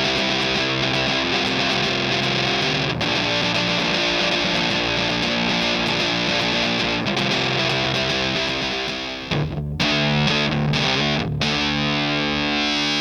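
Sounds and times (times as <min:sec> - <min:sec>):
fuzzed electric guitar chords: 0:00.0 - 0:13.0.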